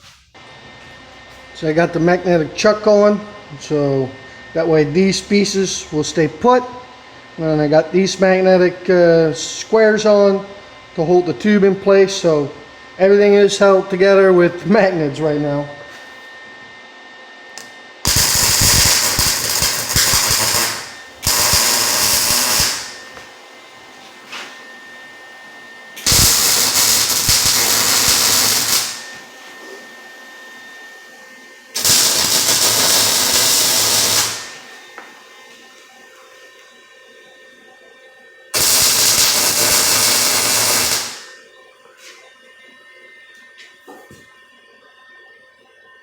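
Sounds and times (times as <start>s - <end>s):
welder arc crackling and buzzing: 17.6s - 29.8s, 31.6s - 35.8s, 38.5s - 41.4s.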